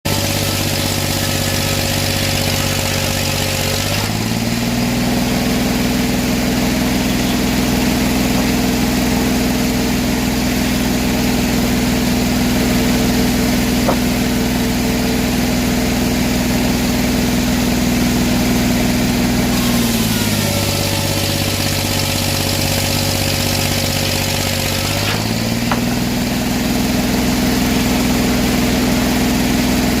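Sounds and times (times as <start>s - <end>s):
sawmill engine running: 0.1s - 30.0s.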